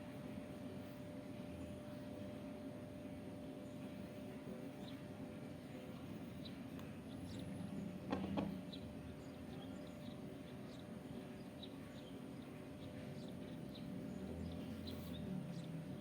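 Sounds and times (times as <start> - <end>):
small birds chirping: 5.8 - 16.0.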